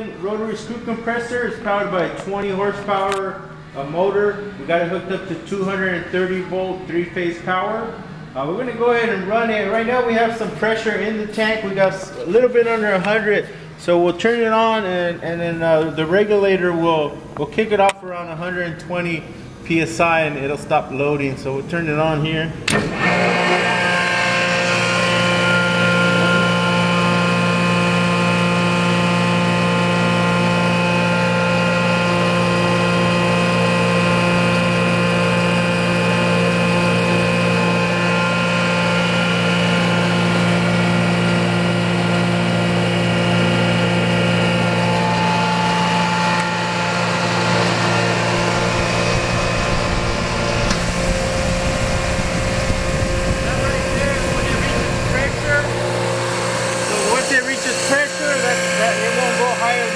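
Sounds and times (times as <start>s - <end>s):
air compressor running: 9.8s - 14.3s, 21.8s - 59.9s.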